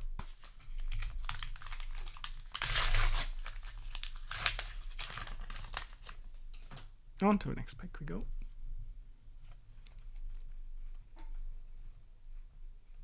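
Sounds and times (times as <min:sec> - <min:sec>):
foil wrapper crinkling and tearing: 0:00.0 - 0:06.4.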